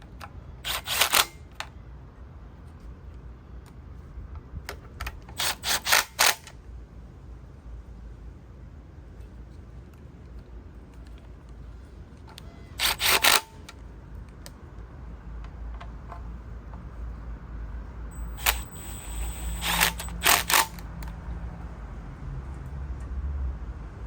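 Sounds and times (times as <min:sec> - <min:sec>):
hand tools clicking: 0:18.2 - 0:20.9.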